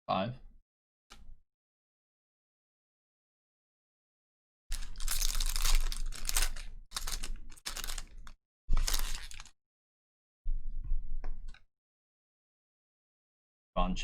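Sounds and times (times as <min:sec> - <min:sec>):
card wrappers crinkling and tearing: 0:04.7 - 0:09.5.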